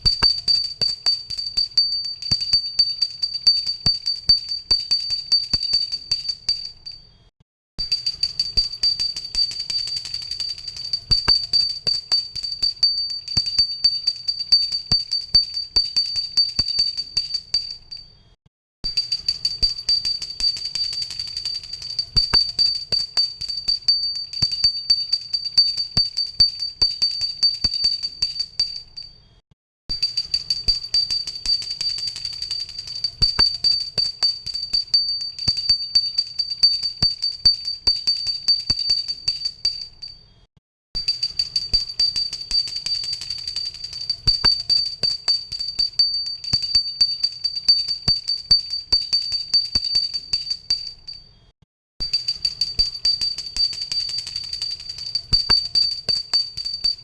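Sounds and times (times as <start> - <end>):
bell ringing rapidly: 7.8 - 18.0, 18.9 - 29.1, 30.0 - 40.1, 41.0 - 51.2.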